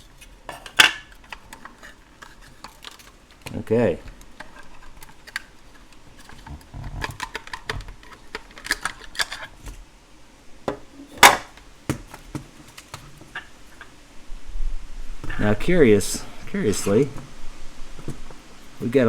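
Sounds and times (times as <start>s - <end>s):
plastic clock parts clicking: 0.6s - 9.5s.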